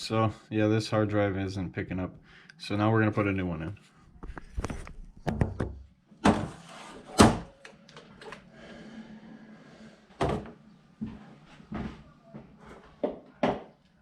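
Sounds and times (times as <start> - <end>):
objects knocking and thudding: 4.2 - 7.5, 10.2 - 10.6.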